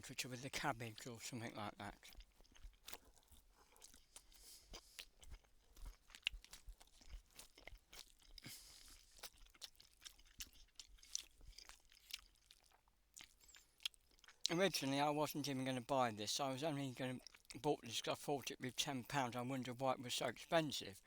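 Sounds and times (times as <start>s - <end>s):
chewing mouth clicks: 1.9s - 14.6s.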